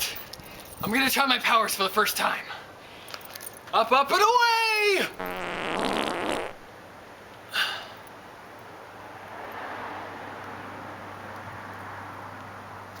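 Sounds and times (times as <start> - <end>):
fart noise: 5.2 - 6.6.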